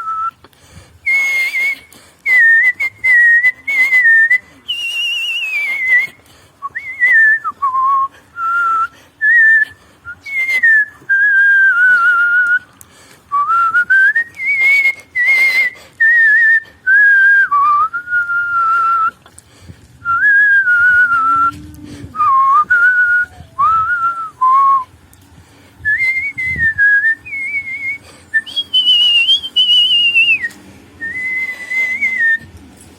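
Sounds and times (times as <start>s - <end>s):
person whistling a melody: 1.1s - 12.6s, 13.3s - 19.2s, 22.2s - 24.9s, 25.9s - 32.5s.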